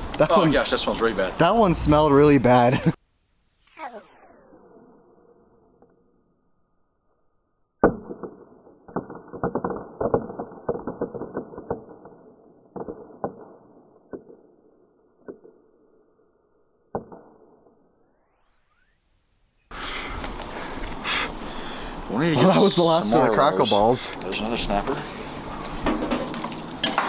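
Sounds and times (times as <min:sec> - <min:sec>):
muffled crackling firework pops: 0:07.8 - 0:14.5.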